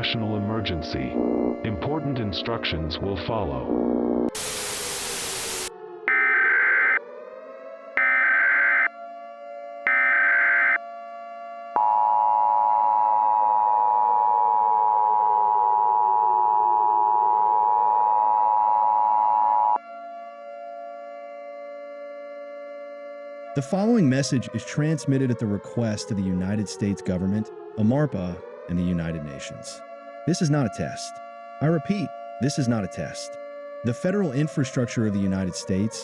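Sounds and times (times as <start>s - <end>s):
low synth drone: 0.8s - 6.3s
static: 3.6s - 7.0s.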